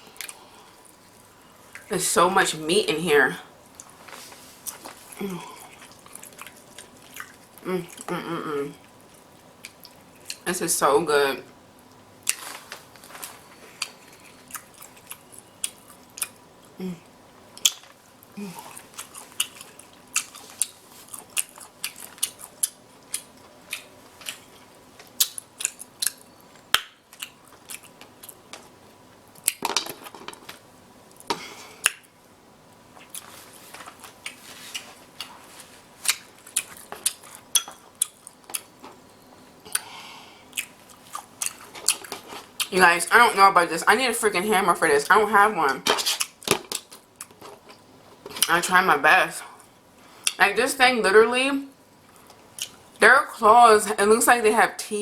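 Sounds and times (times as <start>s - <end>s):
wet mouth smacking and chewing: 5.7s - 8.1s, 18.7s - 24.5s, 36.0s - 38.7s.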